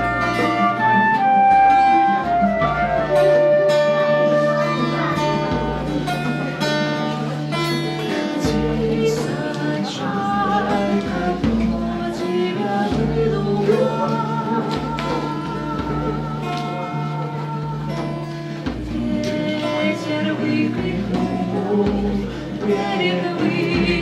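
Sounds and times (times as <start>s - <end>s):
acoustic guitar: 0.0s - 24.0s
live band playing: 0.0s - 24.0s
person singing: 0.0s - 24.0s.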